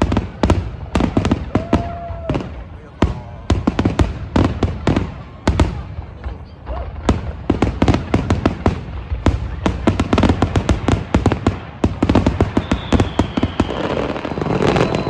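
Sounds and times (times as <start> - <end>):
fireworks cracking and banging: 0.0 - 15.0
thin whistling tone: 12.4 - 15.0.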